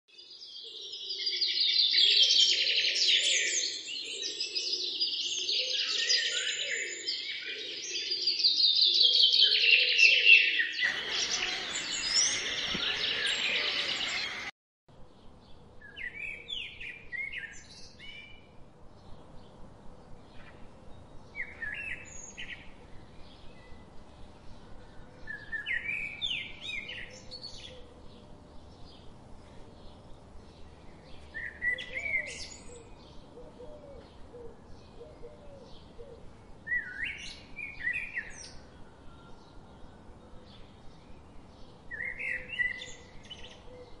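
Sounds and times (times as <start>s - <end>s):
small birds chirping: 10.8s - 14.5s.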